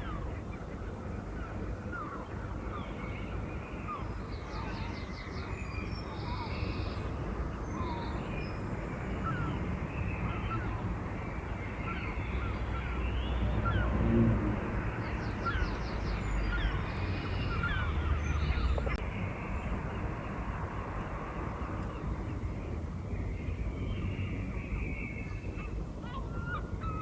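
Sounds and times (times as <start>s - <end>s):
birds chirping and singing: 0.0s - 14.1s, 15.0s - 19.0s
low rumble: 12.9s - 26.0s.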